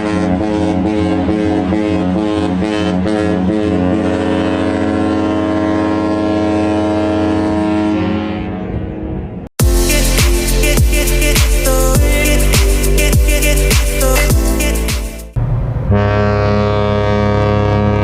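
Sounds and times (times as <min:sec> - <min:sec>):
ship horn blast: 0:00.0 - 0:11.4, 0:12.0 - 0:18.0
background music with a beat: 0:09.6 - 0:15.4.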